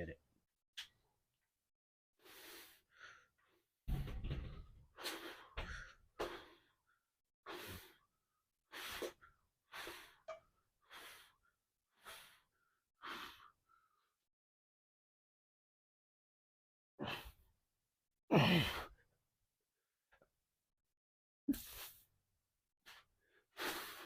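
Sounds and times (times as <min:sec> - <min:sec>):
man breathing hard: 0:02.2 - 0:03.6, 0:04.9 - 0:14.1, 0:22.9 - 0:24.0.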